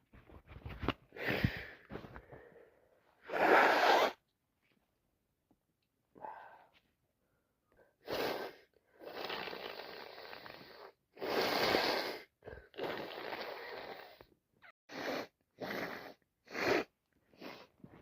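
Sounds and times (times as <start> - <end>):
sharp sniffs: 3.3 - 4.2, 8.0 - 9.8, 14.9 - 17.9
woman blowing her nose: 3.3 - 4.2, 8.0 - 14.2, 14.9 - 17.9.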